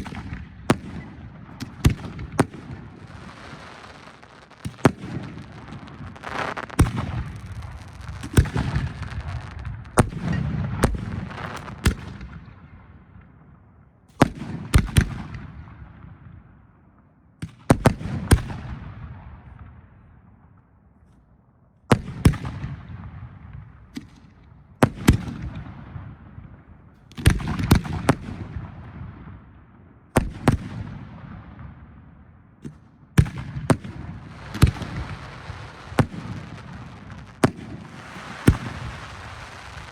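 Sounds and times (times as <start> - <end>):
fireworks shells bursting: 3.0 - 10.0, 34.4 - 39.9.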